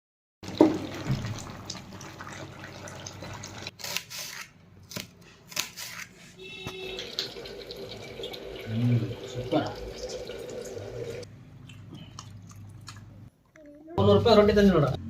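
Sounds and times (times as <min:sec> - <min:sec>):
water splashing and running: 0:00.4 - 0:03.7.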